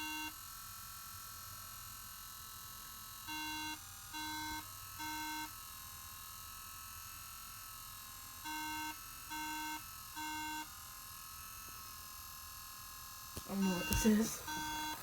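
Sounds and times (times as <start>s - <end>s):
laptop beeping: 13.4s - 15.0s.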